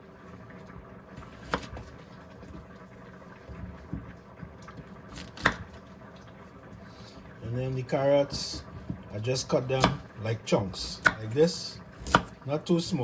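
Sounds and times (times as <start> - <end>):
knife chopping on cutting board: 1.3 - 1.8, 5.2 - 5.8, 9.8 - 10.1, 10.8 - 11.2, 12.0 - 12.4.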